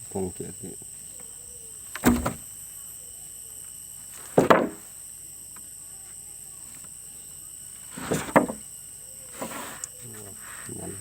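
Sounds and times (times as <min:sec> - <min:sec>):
high insect buzz: 0:00.0 - 0:11.0
wood knocking on wood: 0:04.3 - 0:04.8, 0:08.0 - 0:08.6.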